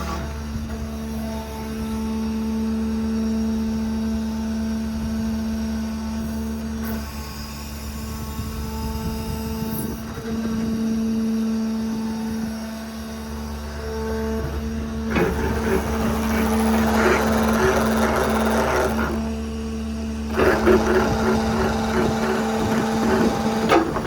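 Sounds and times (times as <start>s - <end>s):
hydraulic pump hum: 13.4s - 24.0s.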